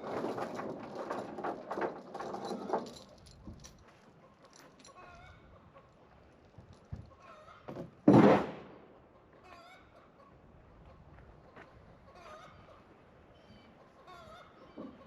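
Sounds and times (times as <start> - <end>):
chickens clucking: 13.6 - 15.0.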